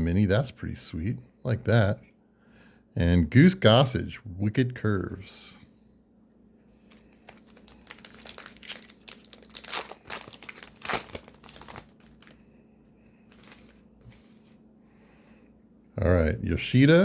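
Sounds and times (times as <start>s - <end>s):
foil wrapper torn and crinkled: 7.0s - 12.4s.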